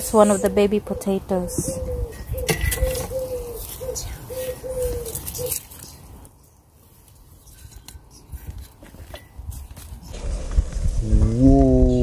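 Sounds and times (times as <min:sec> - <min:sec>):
pigeon cooing: 0:00.0 - 0:05.8.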